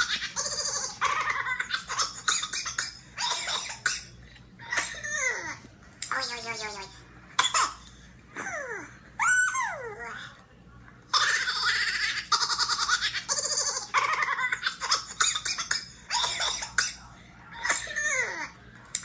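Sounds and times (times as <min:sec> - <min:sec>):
high-pitched laughter: 0:00.0 - 0:03.8.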